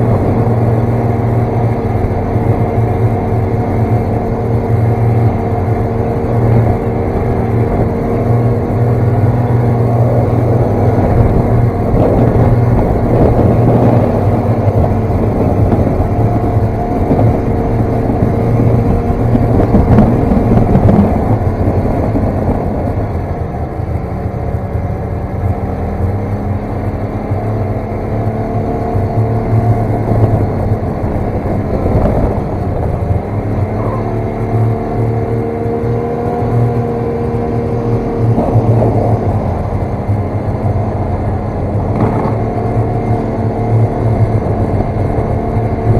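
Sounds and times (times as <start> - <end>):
snowmobile engine running: 0.0 - 45.9.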